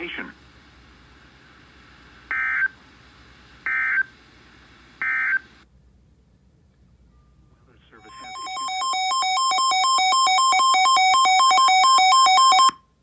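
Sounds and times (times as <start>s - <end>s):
background hiss: 0.0s - 8.6s
warbling digital data tones: 8.1s - 12.7s.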